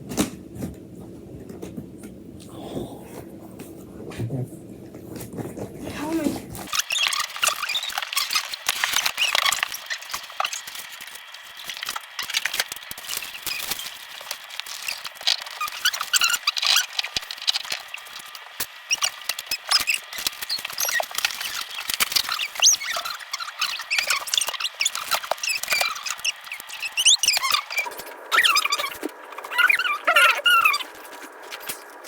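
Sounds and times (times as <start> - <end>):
packaging crackling and rustling: 6.7 - 32.0.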